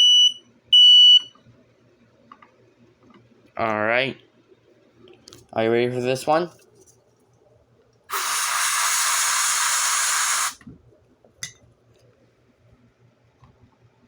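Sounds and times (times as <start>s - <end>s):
aerosol spray can hissing: 8.1s - 10.6s.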